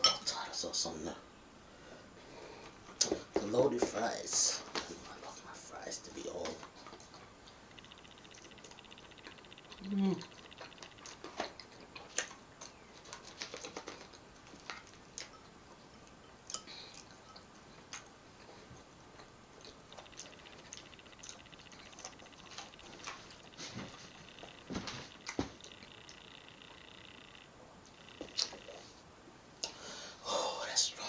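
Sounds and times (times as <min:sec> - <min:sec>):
faint high buzz: 0:00.0 - 0:31.0
chewing with wet mouth clicks: 0:06.3 - 0:28.8.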